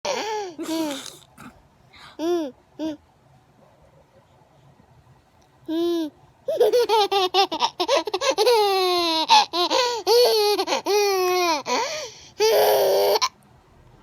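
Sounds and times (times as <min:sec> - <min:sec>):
baby laughing: 0:05.7 - 0:13.3.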